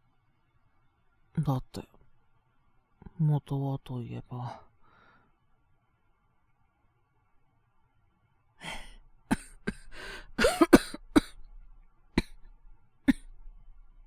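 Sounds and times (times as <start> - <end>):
man breathing in: 4.8 - 5.4, 8.6 - 9.0, 9.7 - 10.4
man coughing harshly: 9.3 - 11.4.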